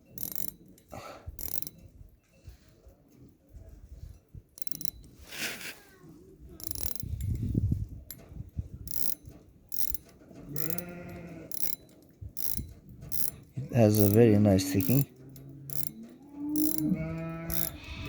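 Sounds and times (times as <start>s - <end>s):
watch winding ratchet clicks: 0.0s - 2.0s, 4.1s - 5.3s, 6.6s - 8.2s, 8.8s - 10.9s, 11.5s - 17.9s.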